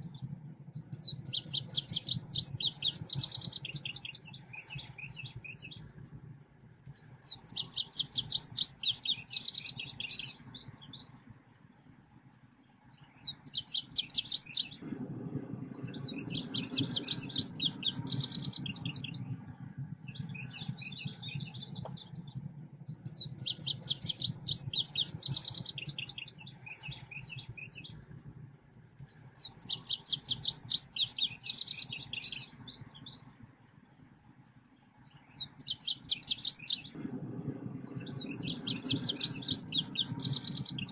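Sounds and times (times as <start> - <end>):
steady low hum: 0.0 - 13.0, 14.6 - 30.0, 36.9 - 40.9.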